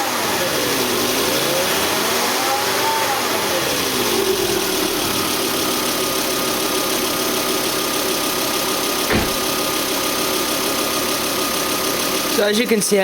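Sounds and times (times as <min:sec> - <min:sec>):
car engine idling: 0:00.0 - 0:13.0
thump: 0:09.1 - 0:09.6.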